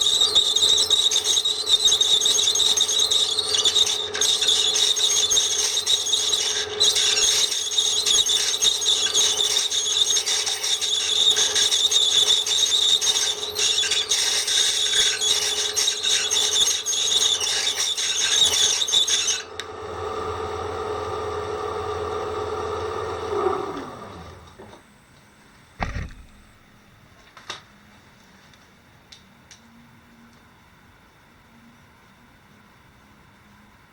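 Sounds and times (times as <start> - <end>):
drill bit whistling shrilly: 0.0 - 19.5
drill motor running: 0.0 - 19.6.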